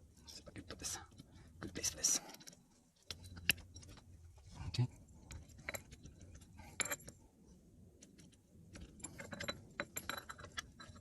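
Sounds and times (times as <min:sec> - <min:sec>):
metallic clicks and rattles: 0:08.0 - 0:11.0.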